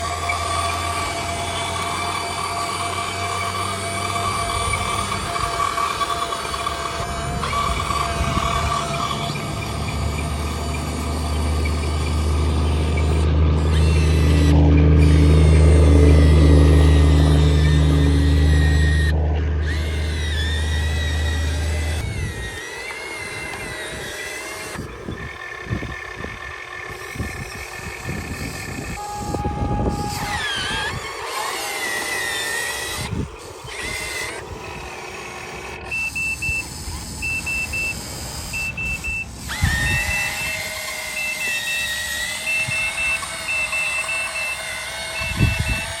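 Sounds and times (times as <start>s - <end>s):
electric gear motors whining: 0.0s - 46.0s
short high electronic beeps: 35.9s - 39.3s.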